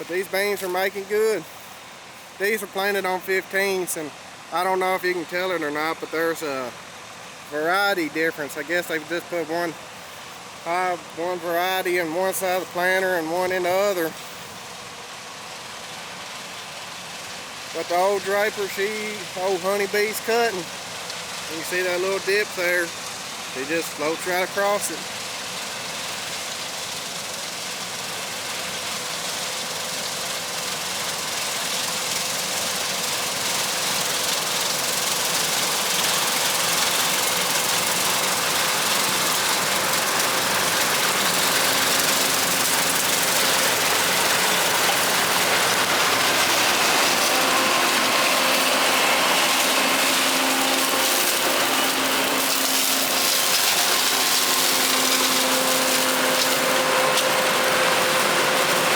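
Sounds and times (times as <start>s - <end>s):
combine harvester running: 0.0s - 58.9s.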